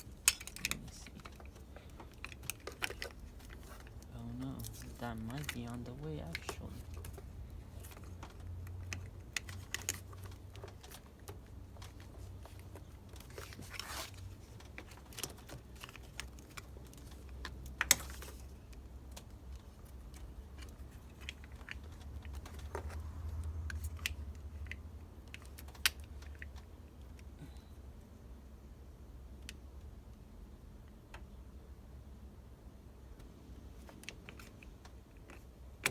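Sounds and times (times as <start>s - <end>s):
small metal parts clicking: 0.0s - 23.0s
low steady hum: 0.0s - 35.9s.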